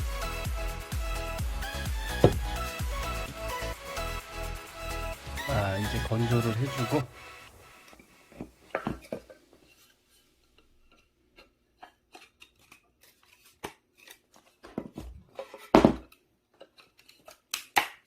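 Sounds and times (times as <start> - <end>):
loud knock: 2.2 - 2.6
objects being handled clicks: 15.4 - 18.0.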